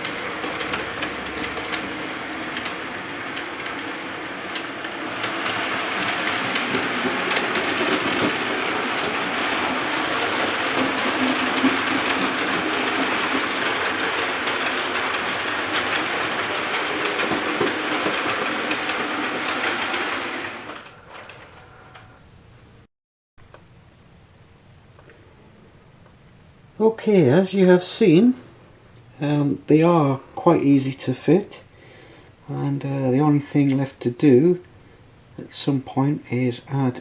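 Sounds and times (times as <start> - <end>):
wheel clicks: 0.0 - 22.1
model train rumbling on track: 0.0 - 22.8, 26.8 - 37.0.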